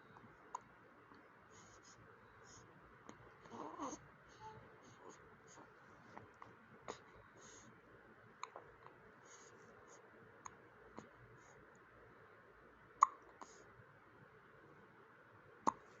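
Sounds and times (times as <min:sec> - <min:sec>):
baby hiccuping: 0:15.7 - 0:15.9.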